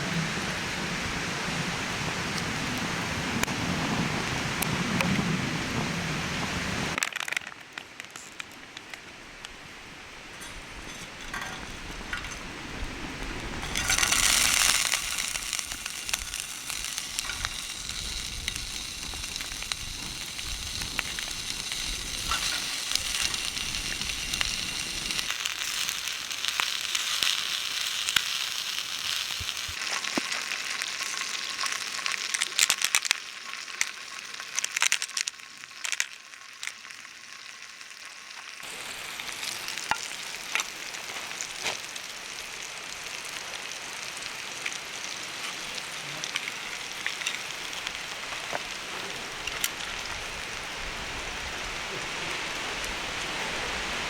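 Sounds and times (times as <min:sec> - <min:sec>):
food sizzling in a hot pan: 0:13.5 - 0:54.0.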